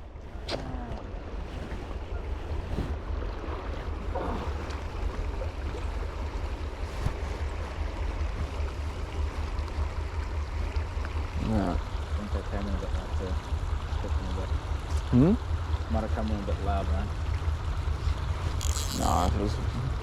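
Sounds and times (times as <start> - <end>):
wind buffeting microphone: 0.0 - 12.8
river water flowing: 0.0 - 20.0.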